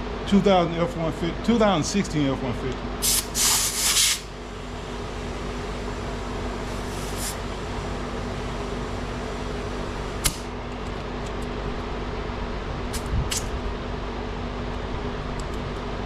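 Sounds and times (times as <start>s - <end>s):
air compressor running: 3.0s - 11.2s.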